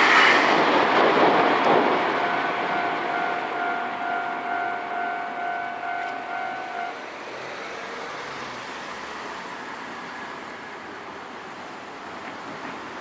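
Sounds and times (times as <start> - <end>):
traffic hiss: 0.0 - 1.0, 6.0 - 13.0
level crossing warning bell: 2.0 - 7.0.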